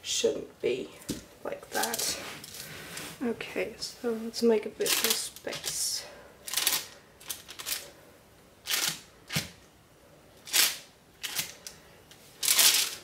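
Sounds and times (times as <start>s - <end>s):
objects rustling and clattering: 1.0s - 3.4s.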